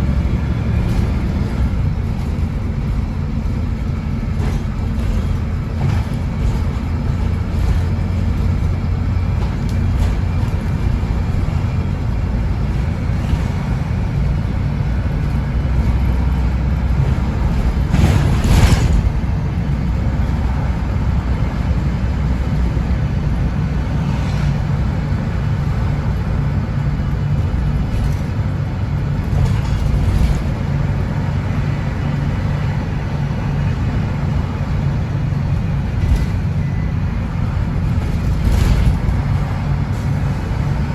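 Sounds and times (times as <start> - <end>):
bus diesel engine drone: 0.0 - 40.9.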